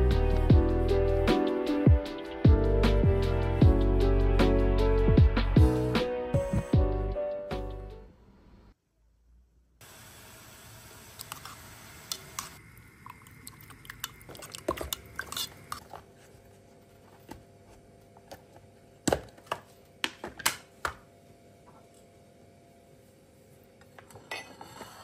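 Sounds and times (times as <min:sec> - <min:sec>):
dishes and utensils clinking: 0:24.0 - 0:25.0.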